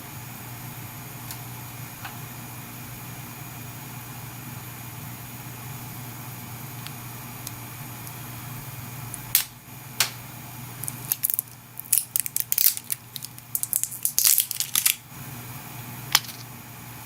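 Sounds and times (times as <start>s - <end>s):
steady low hum: 0.0s - 17.0s
packaging clicks: 10.8s - 15.0s
packaging crackling and tearing: 10.8s - 15.0s.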